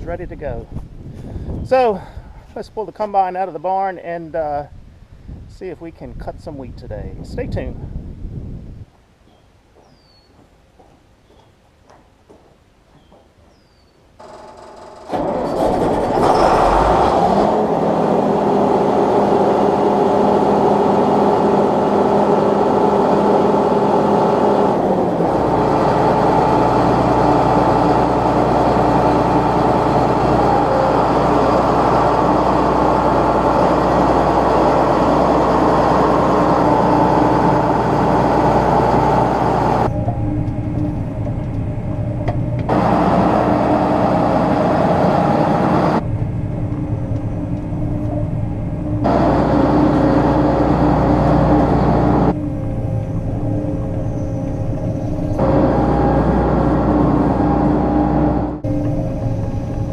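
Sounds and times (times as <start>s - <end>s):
diesel engine drone: 14.2s - 59.9s.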